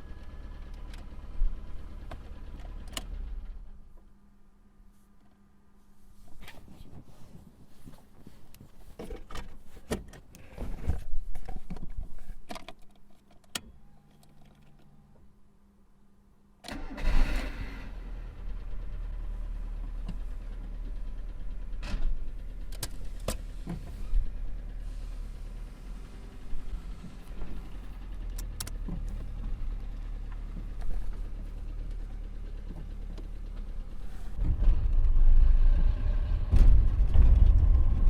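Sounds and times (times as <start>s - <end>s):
car engine starting and idling: 0.0s - 4.3s, 16.7s - 38.0s
clicks and knocks of handling: 8.5s - 15.0s.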